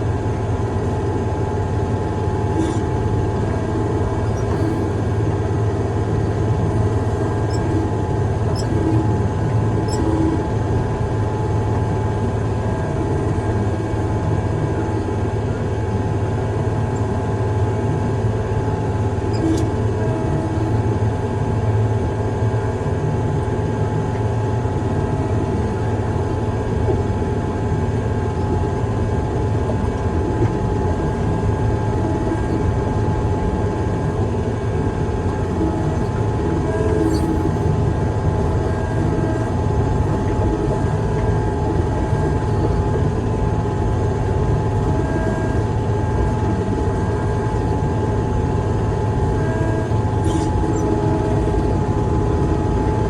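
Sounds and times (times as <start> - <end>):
heavy diesel engine running: 0.0 - 53.0.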